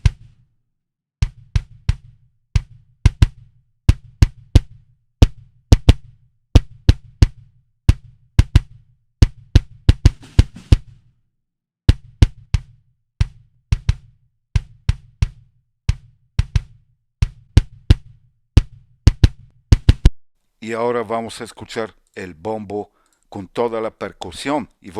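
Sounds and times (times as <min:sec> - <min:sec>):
kick drum pattern: 0:01.2 - 0:11.0, 0:11.9 - 0:20.1.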